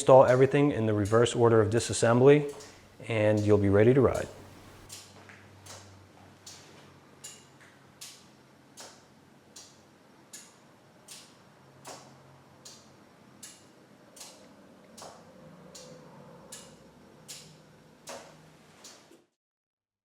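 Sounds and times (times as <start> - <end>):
turn-signal relay clicking: 2.4 - 5.1, 7.2 - 19.0.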